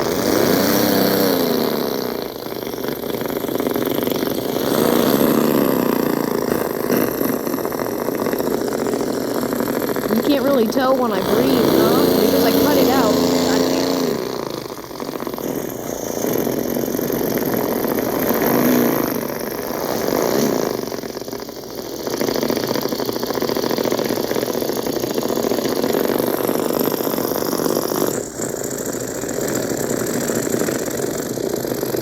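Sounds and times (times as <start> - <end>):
mouth imitation of motorcycle engine: 0.0 - 22.9.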